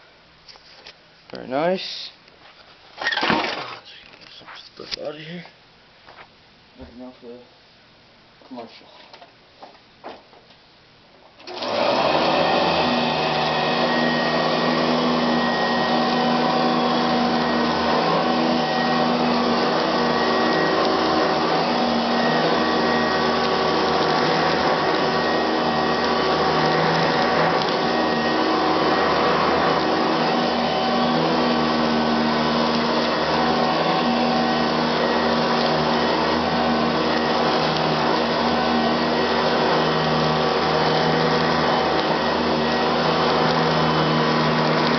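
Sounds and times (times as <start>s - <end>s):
vacuum cleaner running: 11.4s - 44.9s.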